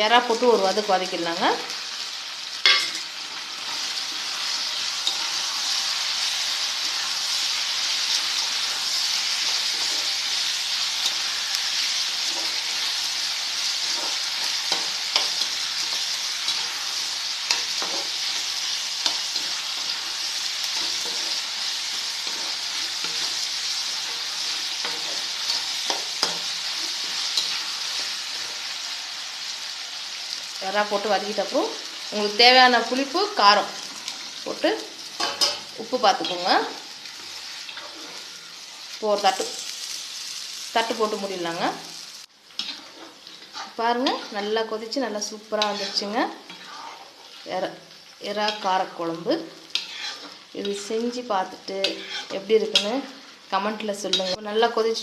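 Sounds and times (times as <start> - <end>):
prawns sizzling in oil: 0.0 - 55.0
utensil stirring and scraping pan: 2.7 - 30.1, 33.5 - 39.7, 42.5 - 44.8, 45.5 - 47.7, 49.6 - 51.0, 51.7 - 53.5.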